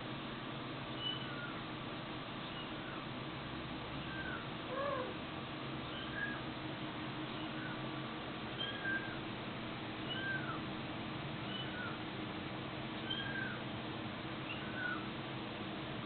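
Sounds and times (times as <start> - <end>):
low background hum: 0.0 - 16.0
kitten mewing: 4.1 - 5.2, 10.1 - 10.6.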